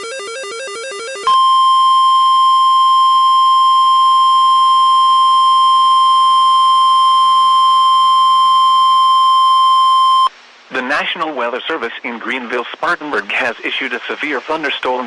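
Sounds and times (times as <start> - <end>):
steady alarm tone: 0.0 - 10.3.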